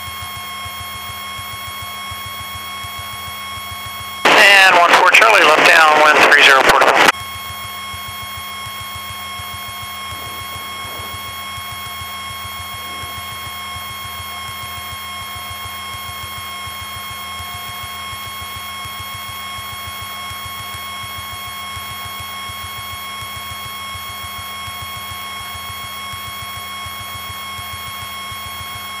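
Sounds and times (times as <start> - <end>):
propeller aircraft engine droning: 0.0 - 26.0
steady high whine: 0.1 - 22.1.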